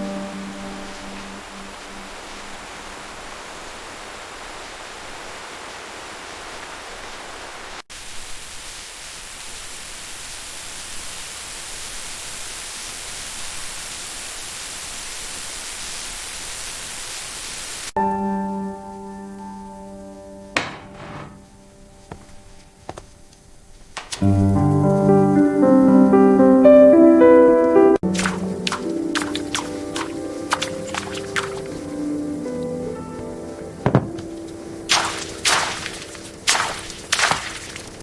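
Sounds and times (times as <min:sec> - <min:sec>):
rain hiss: 0:00.0 - 0:18.0, 0:28.0 - 0:38.0.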